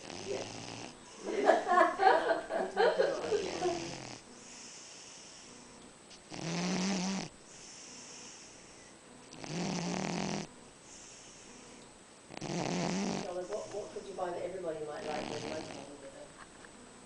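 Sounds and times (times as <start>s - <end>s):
cat snoring: 0.0s - 1.2s, 3.1s - 13.9s, 15.0s - 16.1s
soft breathing: 3.1s - 6.3s, 7.4s - 9.2s, 10.8s - 12.0s, 12.9s - 14.1s.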